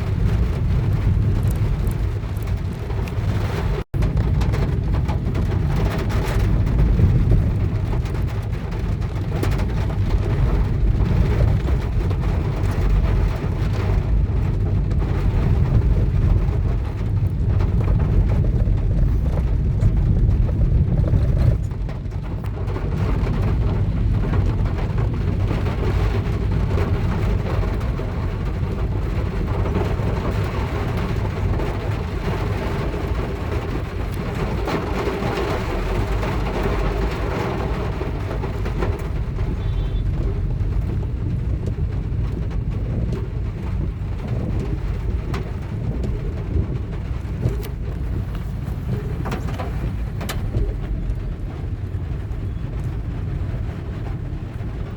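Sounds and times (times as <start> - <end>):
deep rumble: 0.0 - 54.9
rain and hail drumming on car: 0.0 - 54.9.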